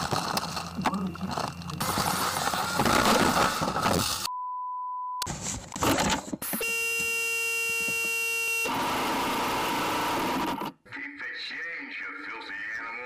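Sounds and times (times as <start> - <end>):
censor bleep: 4.3 - 5.3.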